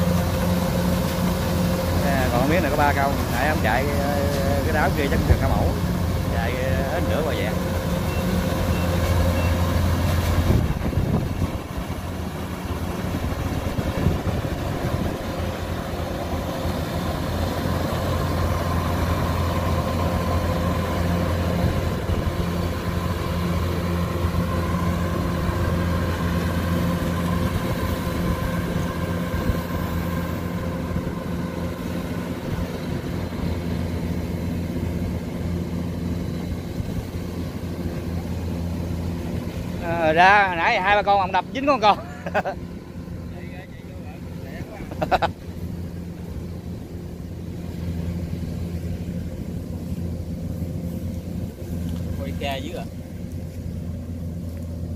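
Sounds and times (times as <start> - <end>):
combine harvester engine running: 0.0 - 54.9.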